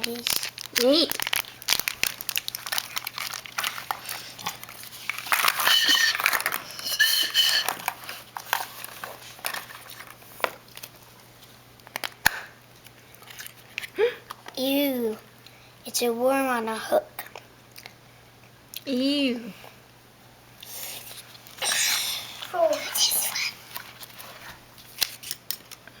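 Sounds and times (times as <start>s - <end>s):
wrapper and plastic crinkling: 0.0s - 14.6s, 22.3s - 26.0s
high-pitched squeaks: 5.6s - 7.8s.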